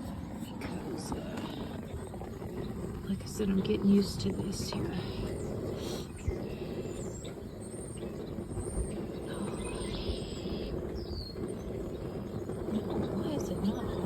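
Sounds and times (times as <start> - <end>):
small birds chirping: 0.0 - 14.0
steady low rumble: 0.0 - 14.0.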